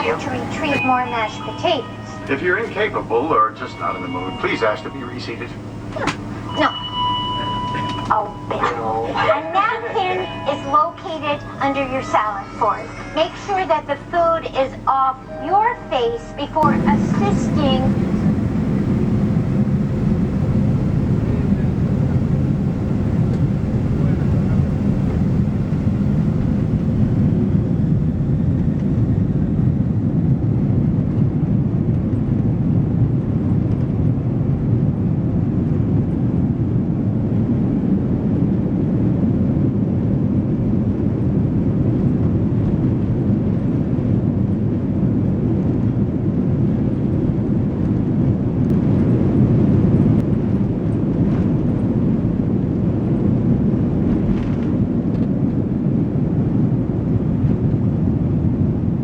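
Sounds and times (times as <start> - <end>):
faint steady hum: 0.0 - 30.8
airplane cabin engine noise: 0.0 - 59.0.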